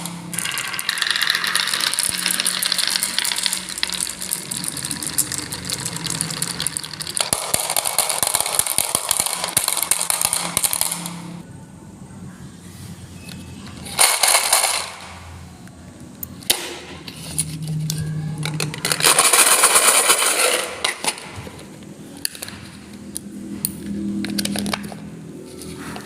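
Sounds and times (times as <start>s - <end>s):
marbles clicking and dropping: 0.0s - 11.4s, 13.9s - 15.4s, 16.2s - 23.3s
marbles rolling on track: 0.0s - 11.4s, 13.9s - 15.3s, 17.9s - 22.7s.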